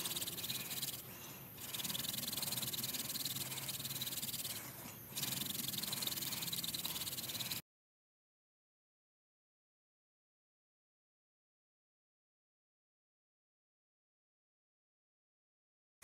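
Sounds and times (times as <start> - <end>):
hand drill grinding wood on wood: 0.0 - 7.6.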